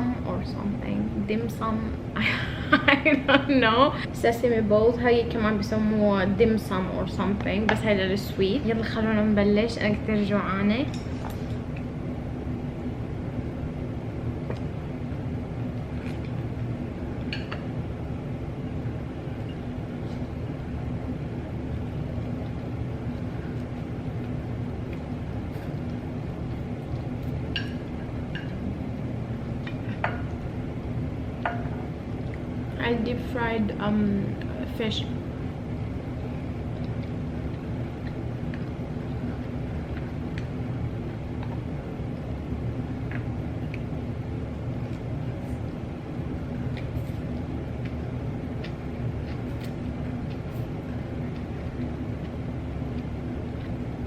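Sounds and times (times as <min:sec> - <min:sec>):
low background hum: 0:00.0 - 0:54.0
low background rumble: 0:00.0 - 0:54.0
chewing and mouth sounds: 0:36.2 - 0:54.0.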